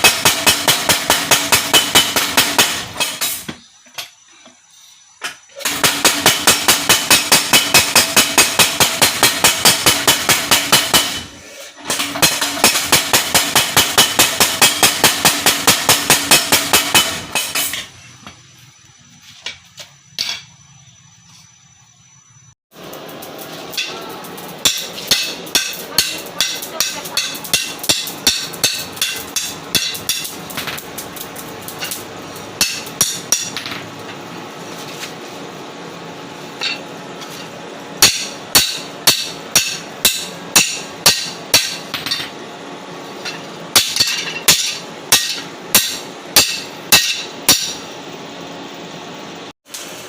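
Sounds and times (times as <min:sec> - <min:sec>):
power hammer striking metal: 0:00.0 - 0:03.6, 0:05.6 - 0:17.9, 0:23.2 - 0:33.9, 0:36.6 - 0:37.4, 0:38.0 - 0:42.4, 0:43.2 - 0:47.9
machine hum: 0:00.0 - 0:50.0.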